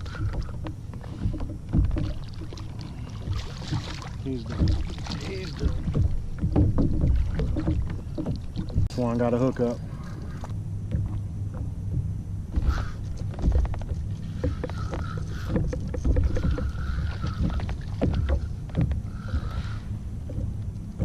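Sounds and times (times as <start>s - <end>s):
boat engine hum: 0.0s - 21.0s
knocks and clicks of handling: 0.1s - 2.5s, 10.9s - 19.4s.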